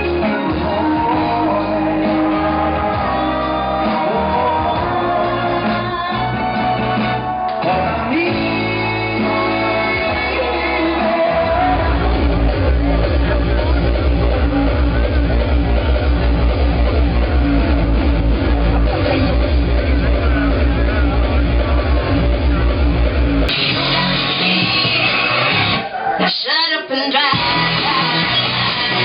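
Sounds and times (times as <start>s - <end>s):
person singing: 0.0s - 17.6s, 23.5s - 29.0s
band with pulsing bass: 0.0s - 26.5s, 27.1s - 29.0s
guitar: 0.0s - 29.0s.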